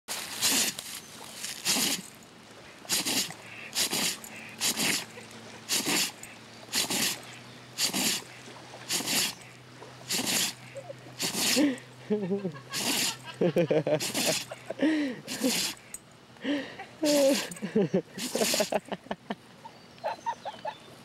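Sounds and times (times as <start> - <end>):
dog sneezing: 0.4 - 0.8, 1.4 - 2.2, 2.9 - 8.3, 8.9 - 9.5, 10.1 - 11.8, 12.7 - 13.3, 14.0 - 14.6, 15.3 - 15.9, 17.0 - 17.6, 18.2 - 18.8.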